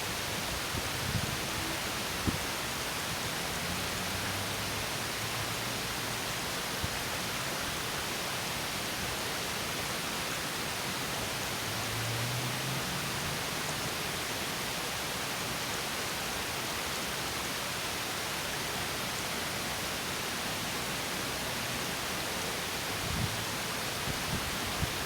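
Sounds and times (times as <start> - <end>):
stream over small waterfall: 0.0 - 25.0.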